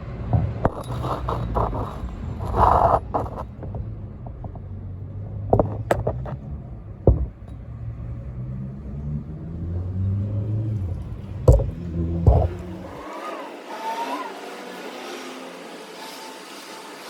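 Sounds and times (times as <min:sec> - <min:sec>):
car engine running: 0:00.3 - 0:13.1
sharp metallic knocks: 0:07.0 - 0:07.5, 0:11.5 - 0:13.0.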